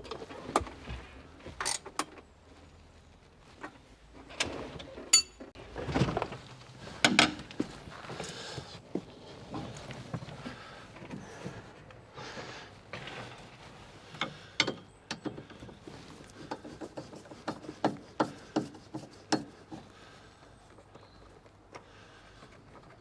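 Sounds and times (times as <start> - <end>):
sharp irregular clicks and knocks: 14.2 - 15.8, 16.4 - 19.9.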